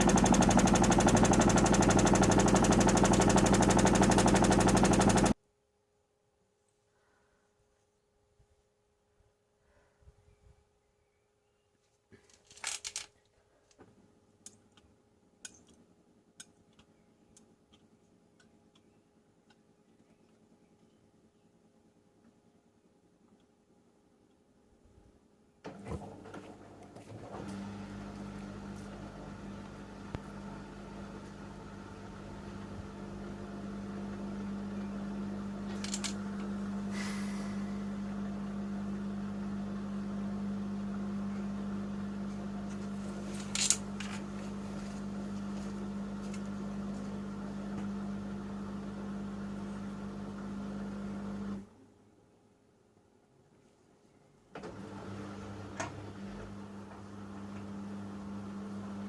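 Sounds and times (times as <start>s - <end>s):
washing machine motor turning drum: 0.0s - 5.4s, 25.7s - 51.6s, 54.6s - 59.0s.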